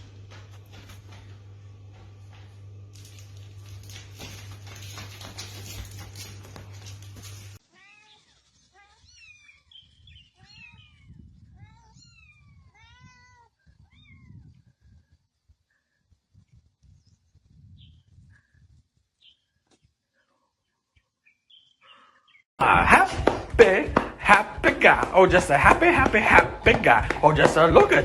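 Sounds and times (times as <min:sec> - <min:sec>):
cat meowing: 0:10.4 - 0:14.4.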